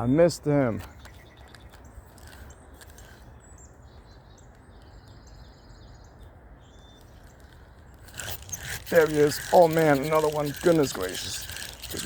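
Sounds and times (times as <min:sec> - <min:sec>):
outdoor background noise: 0:00.0 - 0:12.0
small bird chirping: 0:00.8 - 0:12.0.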